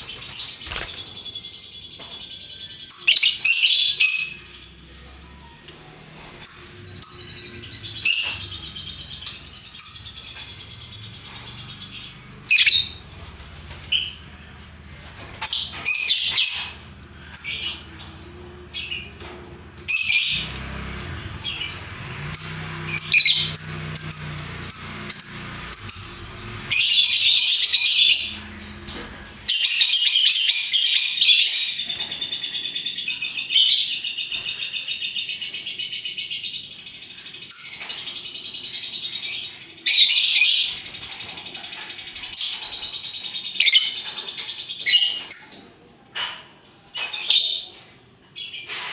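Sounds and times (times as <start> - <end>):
birds chirping shrilly: 0.0 - 5.2, 6.0 - 45.8.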